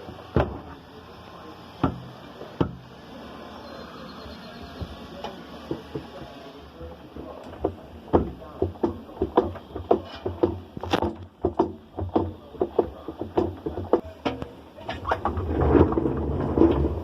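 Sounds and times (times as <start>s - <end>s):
washing machine drum knocking: 1.8s - 2.8s, 7.2s - 14.4s.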